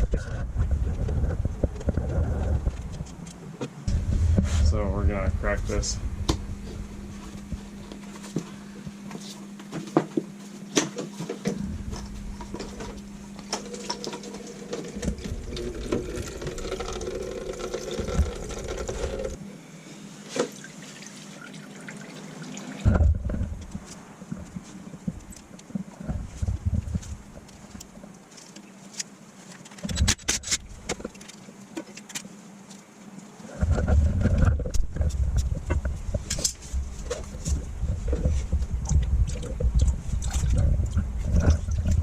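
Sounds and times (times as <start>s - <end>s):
steady low hum: 0.0s - 20.5s, 21.3s - 42.0s
liquid trickling into bucket: 13.6s - 19.4s.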